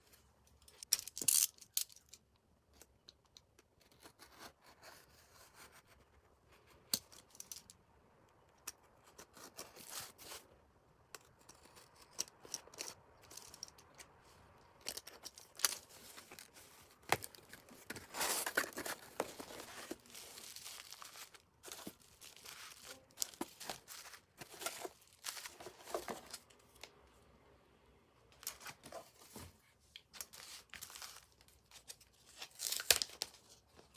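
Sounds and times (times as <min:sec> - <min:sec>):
plastic wrapping crinkling: 0:14.9 - 0:26.8, 0:30.1 - 0:33.6
packaging tearing: 0:15.4 - 0:26.3.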